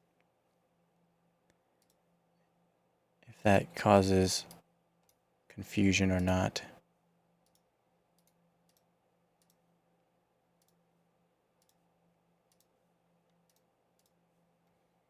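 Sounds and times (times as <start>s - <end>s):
faint low hum: 0.0s - 4.6s
computer mouse clicks: 1.8s - 2.0s, 7.4s - 9.6s, 10.6s - 10.8s, 11.6s - 11.8s, 12.5s - 14.2s.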